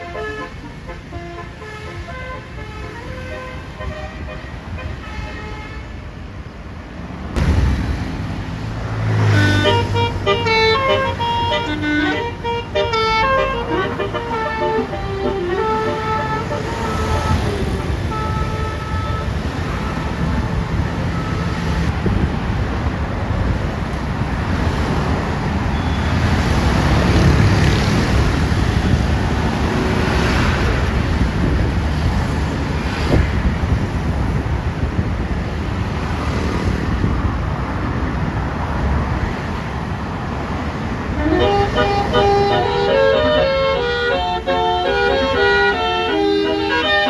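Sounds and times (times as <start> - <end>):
vehicle horn: 0.0 - 6.0, 9.2 - 20.0, 41.2 - 47.0
road traffic passing: 0.0 - 47.0.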